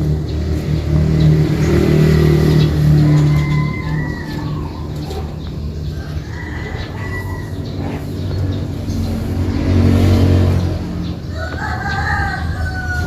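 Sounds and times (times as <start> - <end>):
low engine rumble: 0.0 - 13.0
rooster crowing: 2.8 - 5.2, 5.9 - 7.9, 11.3 - 13.0.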